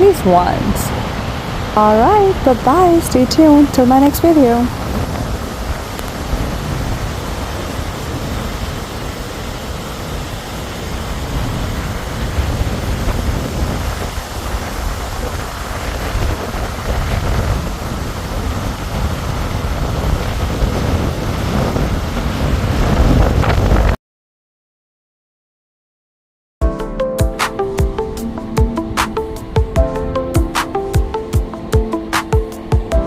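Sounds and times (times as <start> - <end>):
outdoor rushing noise with rumble: 0.0 - 24.0.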